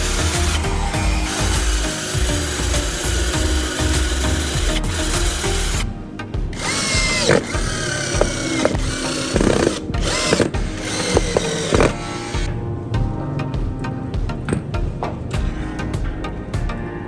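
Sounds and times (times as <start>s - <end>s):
power tool whining: 0.0s - 5.9s, 6.6s - 12.5s
background music: 0.0s - 17.0s.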